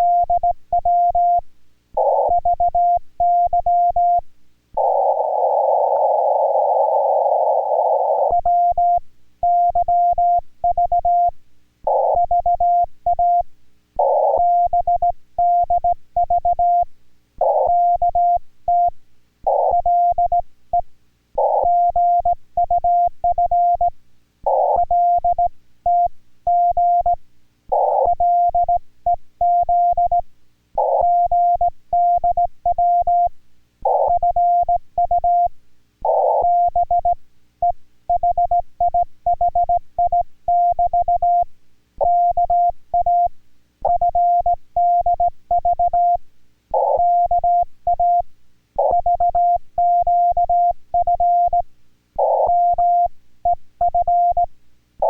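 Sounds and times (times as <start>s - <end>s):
morse code tone: 38.1s - 43.3s, 43.9s - 46.2s, 46.8s - 51.6s, 52.2s - 54.5s.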